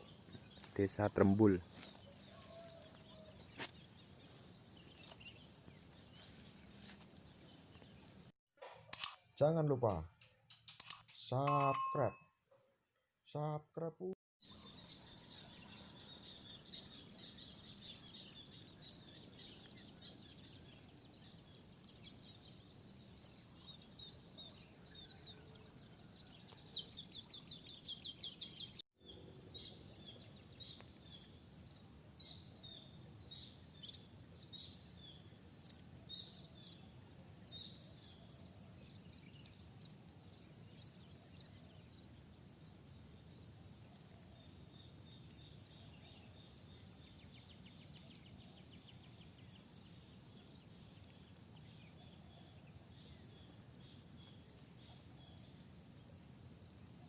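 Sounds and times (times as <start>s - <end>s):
birds chirping: 0.0s - 8.3s.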